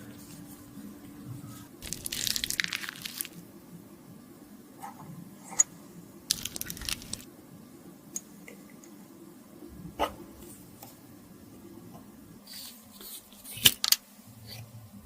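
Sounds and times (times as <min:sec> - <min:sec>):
crackling makeup handling noise: 0:01.8 - 0:03.4, 0:06.3 - 0:07.3.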